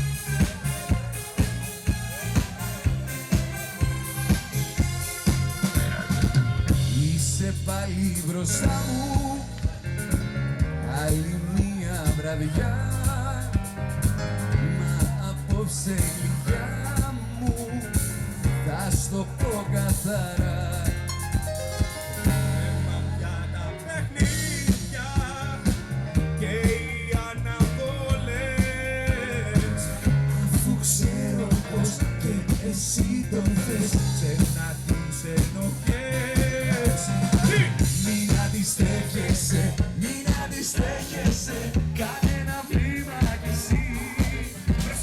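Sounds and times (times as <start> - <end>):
bass line: 0.0 - 45.0
drums: 0.0 - 45.0
person singing: 22.3 - 45.0.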